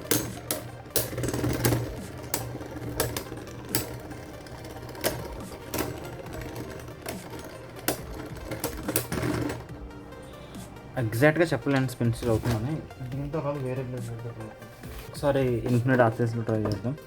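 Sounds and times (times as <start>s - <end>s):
spinning tops clacking: 0.0s - 10.0s
spinning top whirring: 0.0s - 10.7s.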